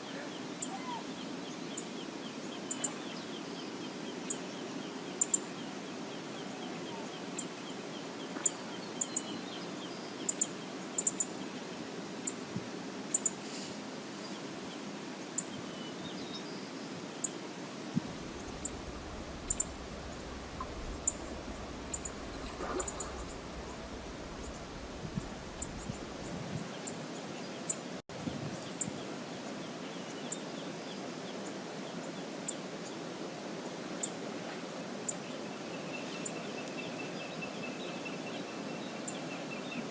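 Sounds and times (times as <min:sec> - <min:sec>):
river water rushing: 0:17.8 - 0:26.3
low rumble: 0:18.0 - 0:26.6
high chirps: 0:18.1 - 0:26.3.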